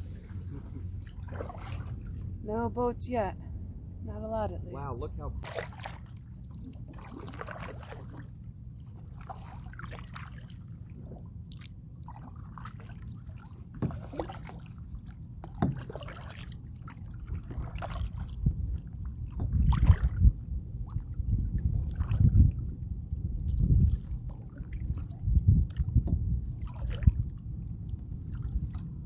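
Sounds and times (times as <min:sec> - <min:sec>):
paddle splashing in water: 0:00.0 - 0:02.2, 0:05.4 - 0:22.8, 0:23.4 - 0:29.0
low rumble: 0:00.0 - 0:09.9, 0:16.7 - 0:29.0.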